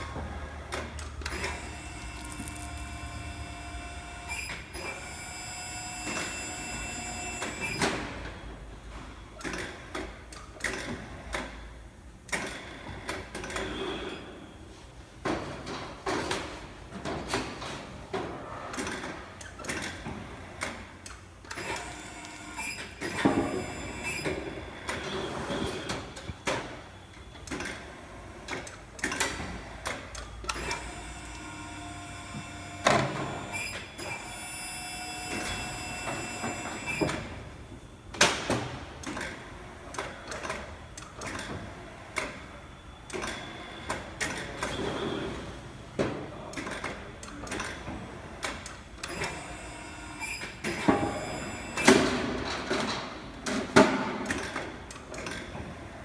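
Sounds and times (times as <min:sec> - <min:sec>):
machine motor whine: 0:01.2 - 0:07.8, 0:30.5 - 0:37.8.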